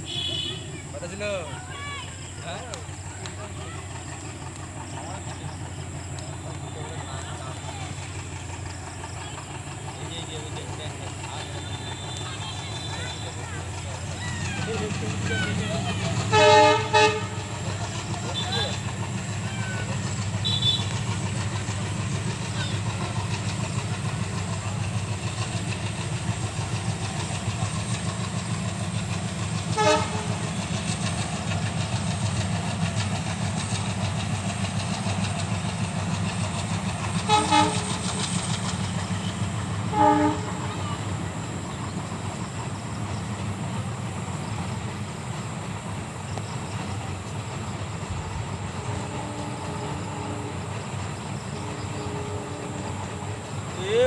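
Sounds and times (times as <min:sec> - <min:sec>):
train horn toots: 0:00.0 - 0:00.8, 0:11.1 - 0:32.0, 0:37.0 - 0:41.4, 0:48.3 - 0:54.0
train rumbling on a bridge: 0:00.0 - 0:54.0.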